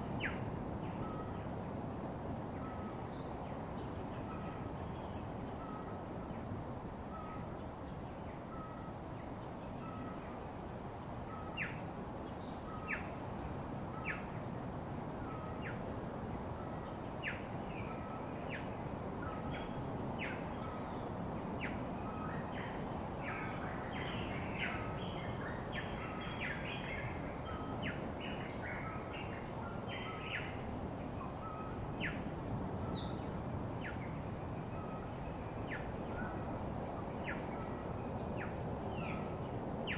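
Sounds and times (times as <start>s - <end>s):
wild birds chirping: 15.1s - 39.9s.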